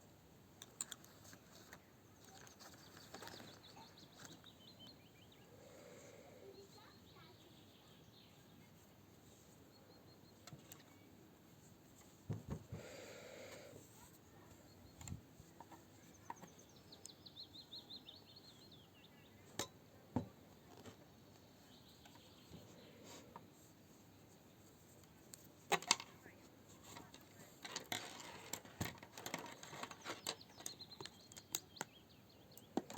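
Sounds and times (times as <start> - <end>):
knitting needles clicking: 0.6 - 4.6, 25.0 - 32.9.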